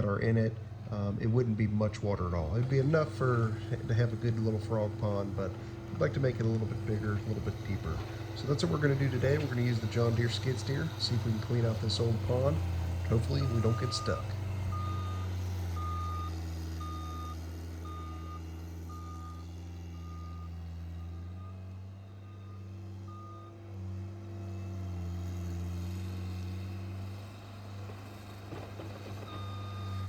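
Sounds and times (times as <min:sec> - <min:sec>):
diesel engine running: 0:00.0 - 0:30.0
reverse alarm beeping: 0:13.2 - 0:19.4.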